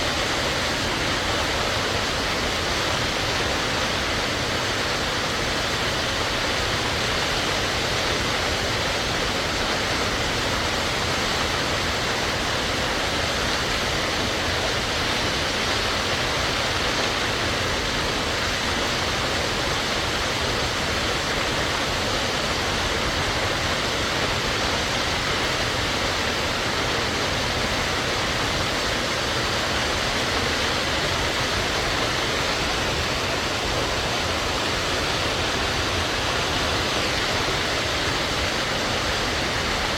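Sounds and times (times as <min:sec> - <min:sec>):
rush of falling water: 0:00.0 - 0:39.9.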